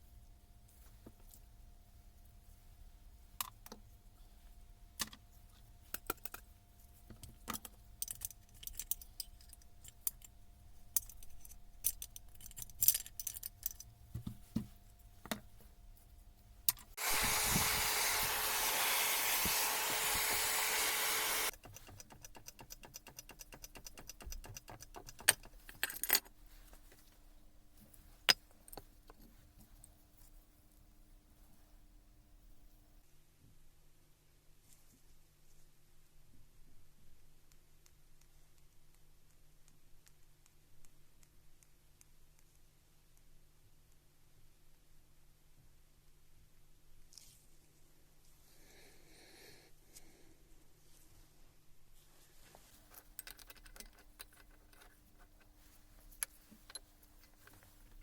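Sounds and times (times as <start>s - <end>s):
metal parts and tools clinking: 7.5s - 13.9s, 20.5s - 26.5s, 52.9s - 58.0s.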